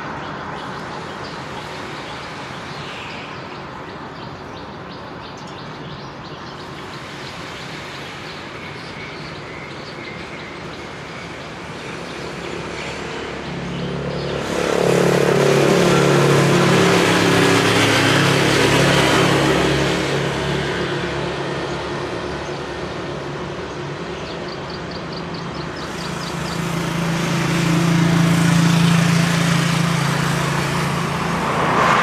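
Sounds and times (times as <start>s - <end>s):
hum of traffic: 0.0s - 32.0s
vehicle engine passing close: 12.5s - 23.7s, 25.0s - 32.0s.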